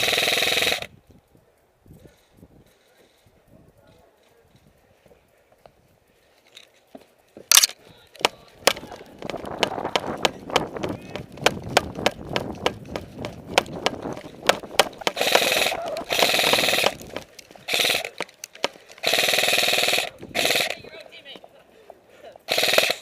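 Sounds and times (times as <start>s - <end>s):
airsoft gun firing: 0.0s - 0.9s, 7.5s - 7.8s, 14.8s - 17.0s, 17.7s - 18.2s, 19.0s - 20.8s, 22.5s - 23.0s
rustle of movement: 0.8s - 22.5s
sharp clicks and knocks: 7.4s - 15.4s.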